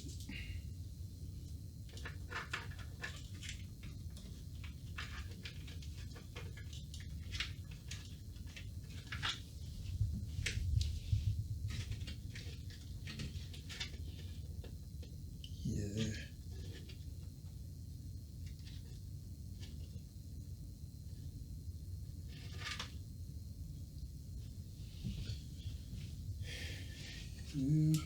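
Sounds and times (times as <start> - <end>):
steady low hum: 0.0 - 1.9, 9.5 - 22.3, 23.0 - 28.0.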